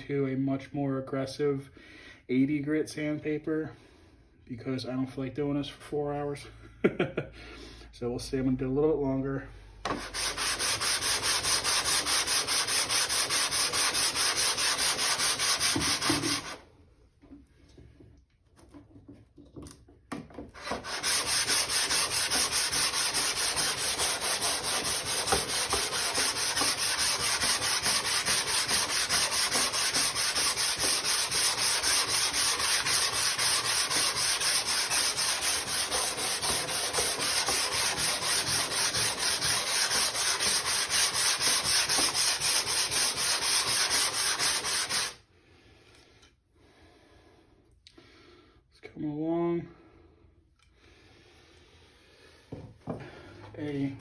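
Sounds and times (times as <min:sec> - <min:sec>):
plane sole rasping on sandpaper: 0:09.9 - 0:16.6, 0:20.6 - 0:45.2.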